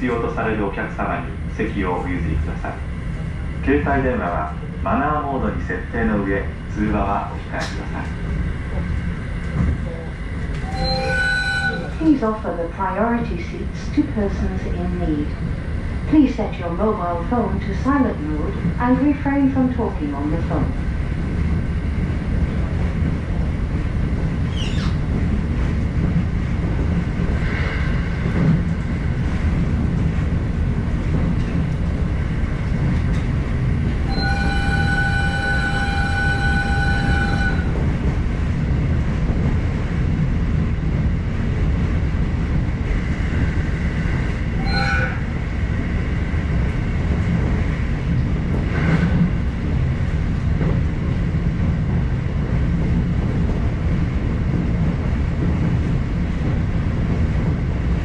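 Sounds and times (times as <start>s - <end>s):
train wheels rumbling on rail: 0.0s - 58.0s
high-pitched squeaks: 10.6s - 12.0s
train horn steady tone: 10.6s - 12.1s, 34.1s - 37.7s, 44.6s - 45.2s.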